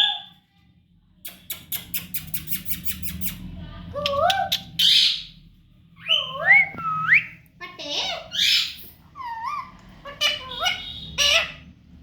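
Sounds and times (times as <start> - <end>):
parrot clicking and calling: 1.3 - 3.4
parrot squawk: 7.8 - 11.8.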